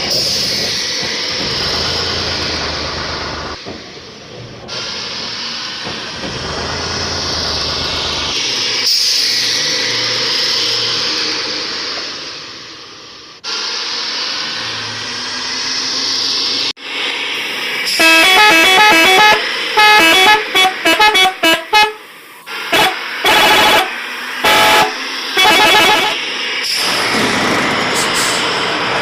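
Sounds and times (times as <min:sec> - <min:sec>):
electronic bus horn melody: 0:17.9 - 0:26.2
held horn blasts: 0:17.9 - 0:26.3.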